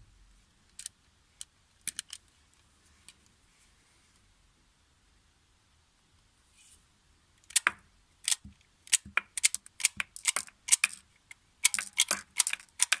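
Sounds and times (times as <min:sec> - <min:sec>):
cartridges clicking into magazine: 0:08.3 - 0:11.0, 0:11.6 - 0:13.0.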